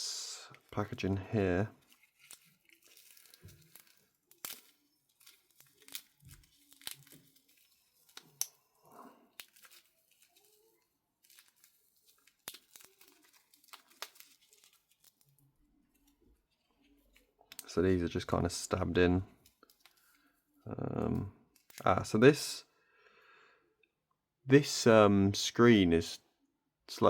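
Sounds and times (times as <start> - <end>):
packaging crinkling and tearing: 1.8 - 17.7, 21.5 - 21.9.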